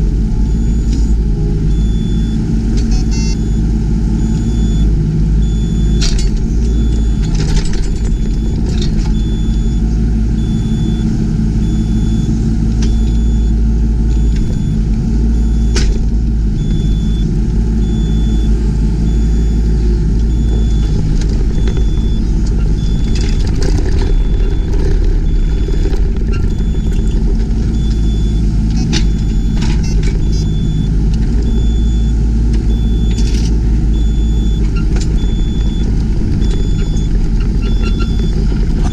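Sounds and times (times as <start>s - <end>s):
excavator diesel engine running: 0.0s - 38.9s
faint high beep: 2.9s - 3.6s.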